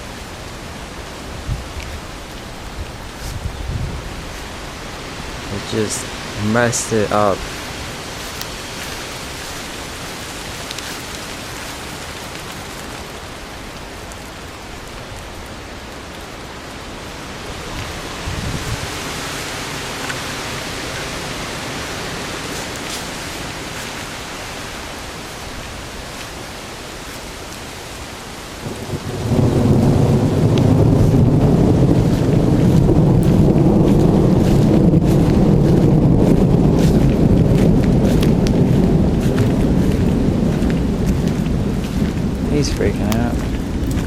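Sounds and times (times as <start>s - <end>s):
heavy rain: 0.0s - 44.0s
deep thunder rumble: 28.6s - 44.0s.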